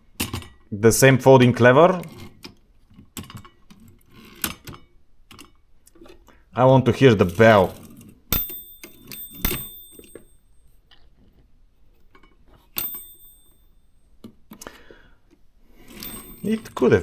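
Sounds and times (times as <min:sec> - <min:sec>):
typewriter bell dinging: 0:07.2 - 0:10.8, 0:12.7 - 0:14.2, 0:15.8 - 0:17.0.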